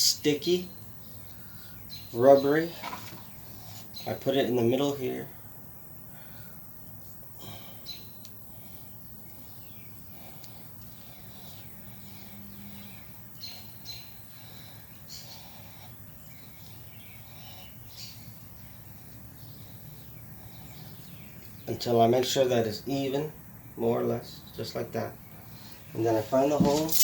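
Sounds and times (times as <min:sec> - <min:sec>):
outdoor background noise: 0:00.0 - 0:27.0
faint bird chirps: 0:00.5 - 0:21.9.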